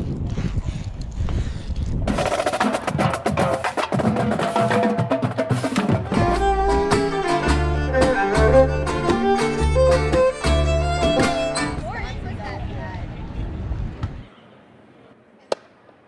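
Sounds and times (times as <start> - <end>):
rapid percussion hits: 2.1 - 11.9
melody over strong bass: 6.2 - 11.8.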